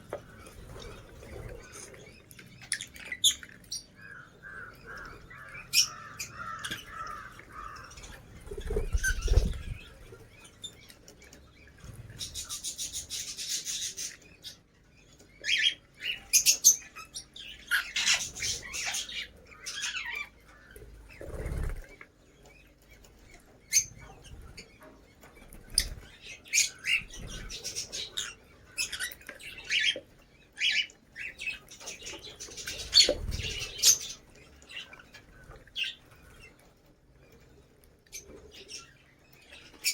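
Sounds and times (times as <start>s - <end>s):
lovebirds chirping and squawking: 0.0s - 39.9s
wings flapping: 8.3s - 10.0s, 21.2s - 21.9s.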